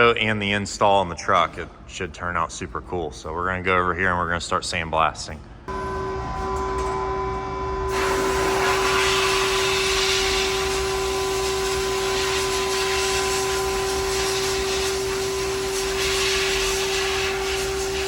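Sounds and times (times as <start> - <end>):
machine whine: 5.7 - 18.0
sandblast air hiss: 7.9 - 18.0.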